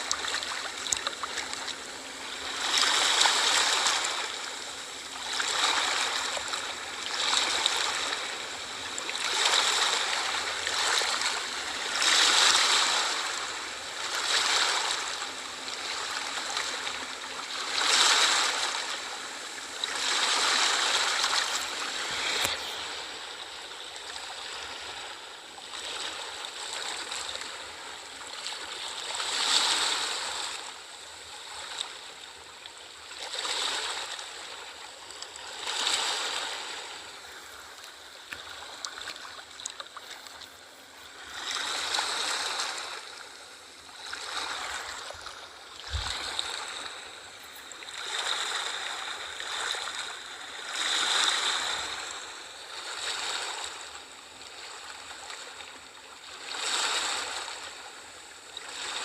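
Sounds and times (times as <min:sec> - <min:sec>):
ocean waves washing in: 0:00.0 - 0:30.8.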